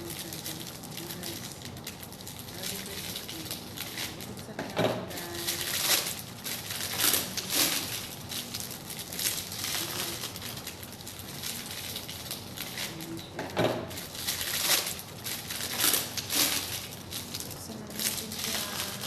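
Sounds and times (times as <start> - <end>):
packaging crinkling and tearing: 0.0 - 19.0.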